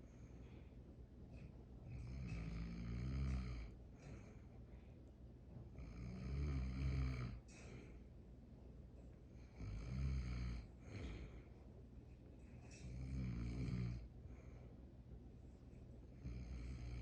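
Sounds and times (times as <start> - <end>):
dog snoring: 1.9 - 4.2, 5.7 - 7.8, 9.4 - 11.3, 12.7 - 14.1, 16.2 - 17.0.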